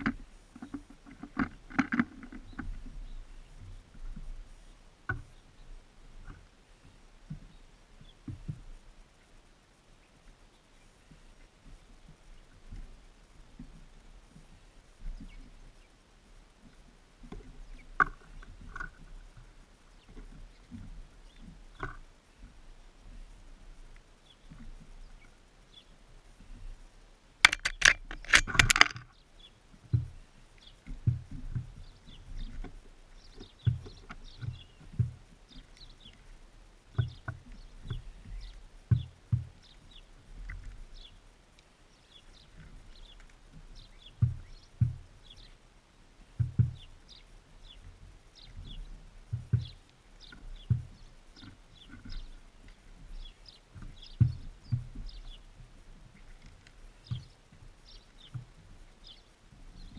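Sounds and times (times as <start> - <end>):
birds pecking on feeder: 0.0 - 4.3, 27.4 - 45.6, 46.4 - 59.3
birds clattering on feeder: 27.4 - 29.2.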